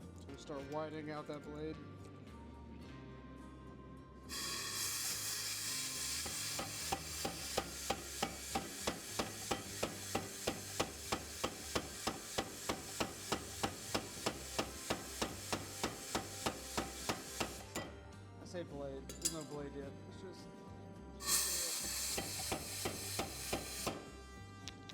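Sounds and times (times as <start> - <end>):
power hammer striking steel: 4.3 - 18.0, 21.2 - 24.2.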